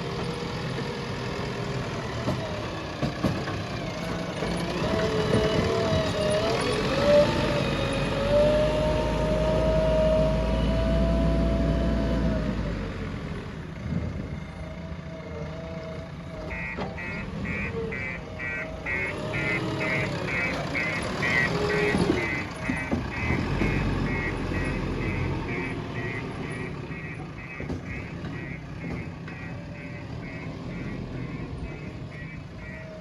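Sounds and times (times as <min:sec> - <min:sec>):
diesel engine running under load: 0:00.0 - 0:33.0
repeating beep: 0:16.5 - 0:33.0.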